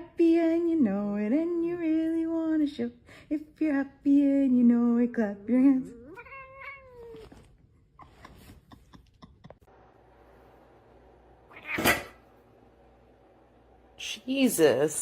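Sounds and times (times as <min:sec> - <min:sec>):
cat meowing: 0:06.0 - 0:07.5, 0:11.5 - 0:12.2.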